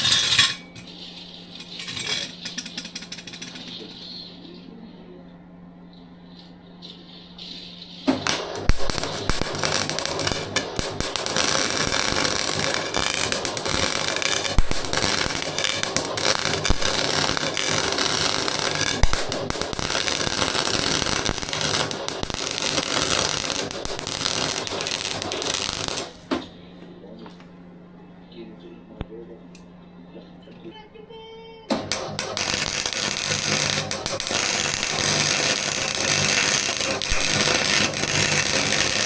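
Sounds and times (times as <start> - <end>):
welding arc crackling: 0.0 - 0.6, 1.6 - 3.1, 8.1 - 26.3, 31.7 - 39.0.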